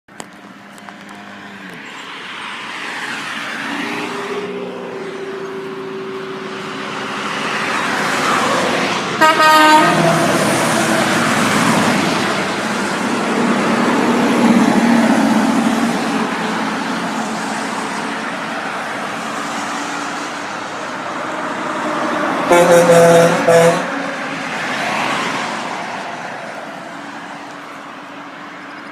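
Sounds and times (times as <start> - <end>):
passing road traffic: 0.1 - 28.9
truck horn blasts: 9.2 - 10.5, 22.4 - 24.0.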